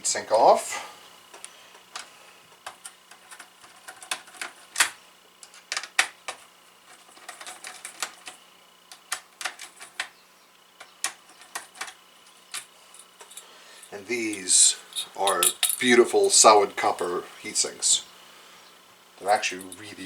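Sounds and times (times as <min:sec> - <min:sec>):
sharp metallic clicks: 0:13.3 - 0:16.0.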